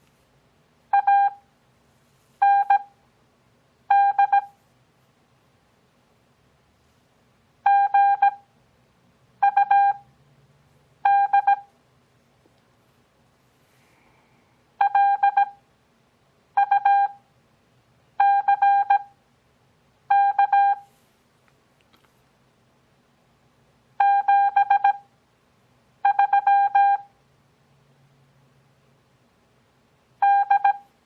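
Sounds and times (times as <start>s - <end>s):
morse code beeps: 0.9s - 1.5s, 2.4s - 3.0s, 3.9s - 4.6s, 7.6s - 8.4s, 9.4s - 10.1s, 11.0s - 11.7s, 14.8s - 15.6s, 16.6s - 17.2s, 18.2s - 19.1s, 20.1s - 20.9s, 24.0s - 25.1s, 26.0s - 27.1s, 30.2s - 30.9s.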